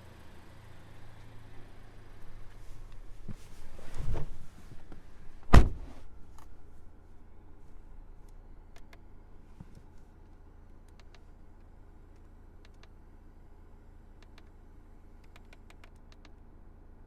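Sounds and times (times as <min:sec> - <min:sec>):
low steady hum: 0:00.0 - 0:17.0
car door thud: 0:05.4 - 0:06.1.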